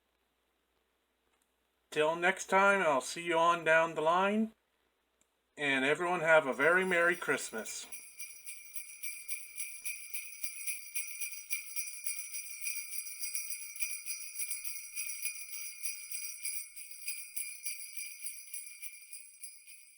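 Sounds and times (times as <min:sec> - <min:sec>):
sleigh bells jingling: 0:06.3 - 0:19.9.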